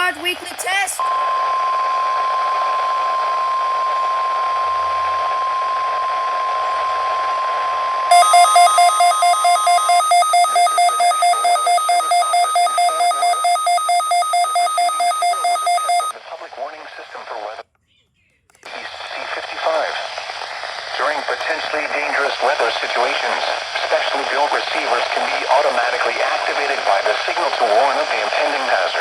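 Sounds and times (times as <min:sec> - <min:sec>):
rapid two-pitch alarm beeping: 0:08.1 - 0:16.1
steady warning alarm tone: 0:08.1 - 0:16.1
radio hiss: 0:18.7 - 0:29.0.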